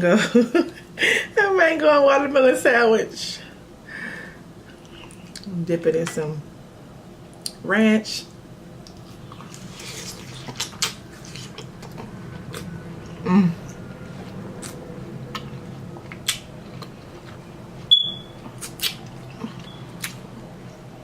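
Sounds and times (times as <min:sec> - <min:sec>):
steady low hum: 0:00.0 - 0:21.0
wet mouth smacks while chewing: 0:08.8 - 0:12.7, 0:14.6 - 0:17.4, 0:18.0 - 0:20.2.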